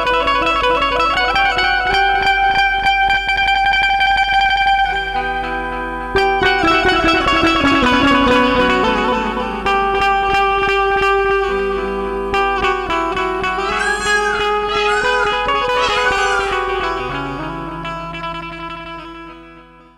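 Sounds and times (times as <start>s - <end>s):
plucked banjo melody: 6.2s - 13.4s.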